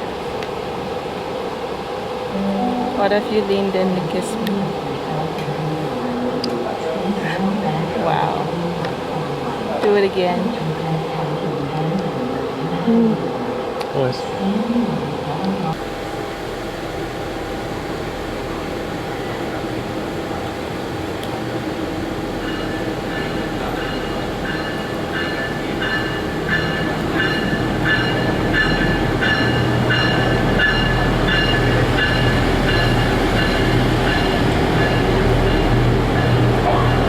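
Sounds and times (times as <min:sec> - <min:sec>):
train rumbling: 0:00.0 - 0:37.0
high pulsing tone: 0:02.3 - 0:04.1.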